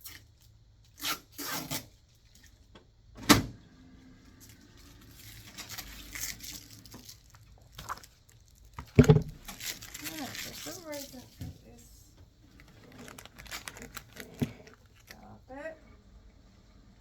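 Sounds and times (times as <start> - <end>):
rustling handling: 5.0 - 15.5.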